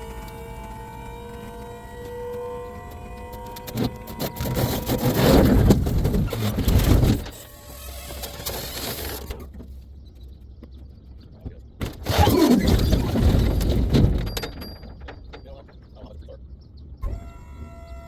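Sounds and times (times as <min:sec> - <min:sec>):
logs tumbling and knocking: 0:11.8 - 0:15.9.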